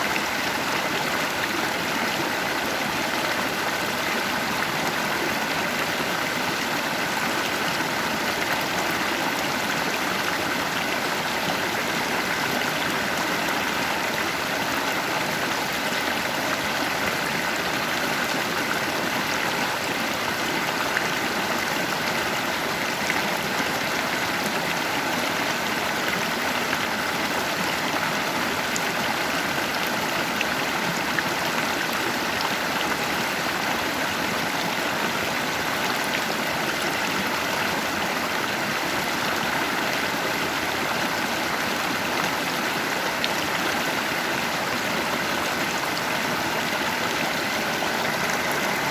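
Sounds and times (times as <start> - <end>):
water flowing over rocks: 0.0 - 48.9.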